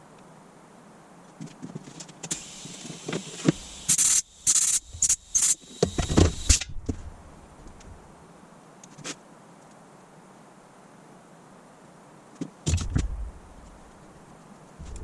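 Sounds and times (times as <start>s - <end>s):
pressurised gas hissing: 2.3s - 6.7s.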